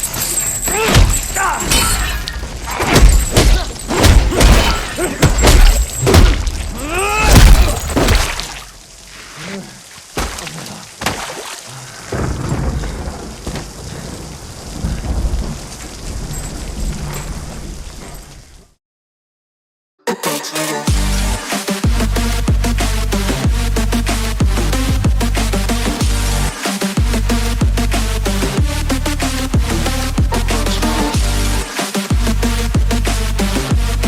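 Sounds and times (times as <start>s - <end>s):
steady rain: 0.0s - 18.8s, 21.2s - 34.0s
punch and body impacts: 0.8s - 8.7s, 10.2s - 11.5s.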